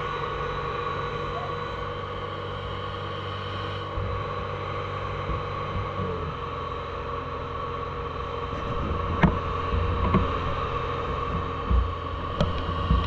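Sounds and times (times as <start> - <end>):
harvester engine droning: 0.0 - 13.0.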